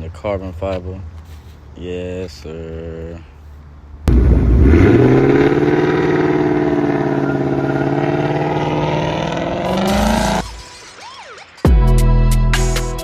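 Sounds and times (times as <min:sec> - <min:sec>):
car engine revving: 0:04.1 - 0:10.7.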